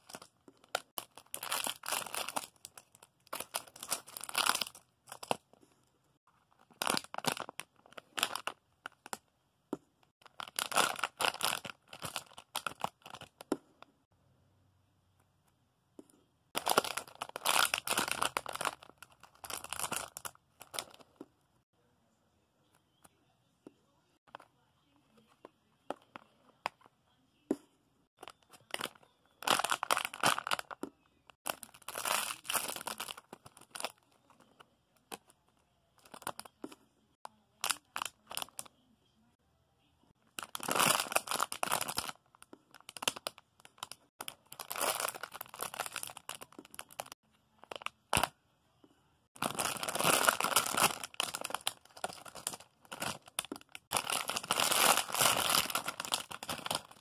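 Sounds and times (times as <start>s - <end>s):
plastic packaging crinkling: 0.0s - 5.4s, 6.5s - 9.2s, 10.2s - 13.5s, 16.6s - 21.1s, 28.2s - 34.0s, 36.0s - 36.5s, 40.3s - 48.3s, 49.4s - 57.0s.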